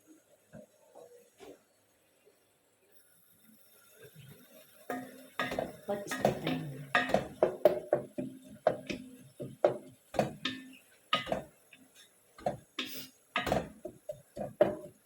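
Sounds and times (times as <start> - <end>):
utensils knocking against cookware: 4.9 - 11.6, 12.4 - 15.0.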